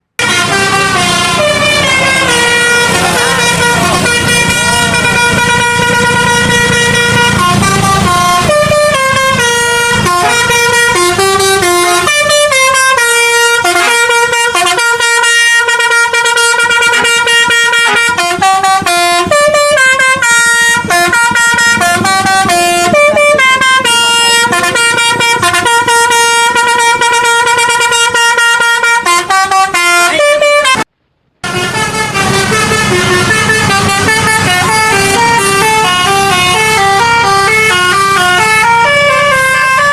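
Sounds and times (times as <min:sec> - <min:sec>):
bus horn playing a melody: 0:00.1 - 0:39.9.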